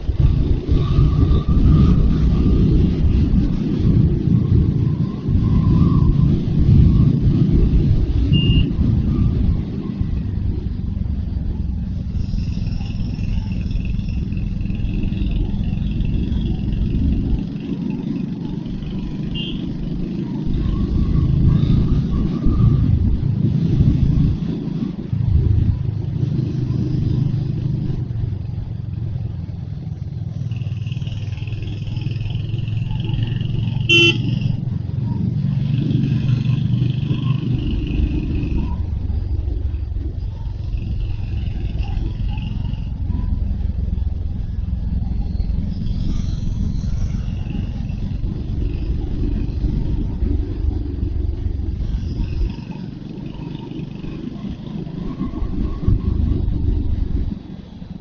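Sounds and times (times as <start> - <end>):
motorcycle engine running: 0.0 - 58.0
short horn toot: 33.8 - 34.5.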